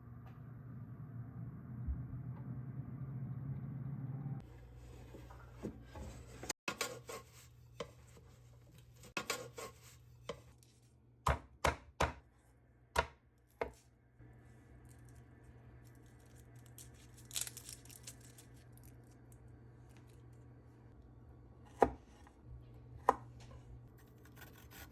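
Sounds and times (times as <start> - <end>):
knife chopping on cutting board: 11.2 - 12.3, 13.0 - 13.8, 21.7 - 22.3.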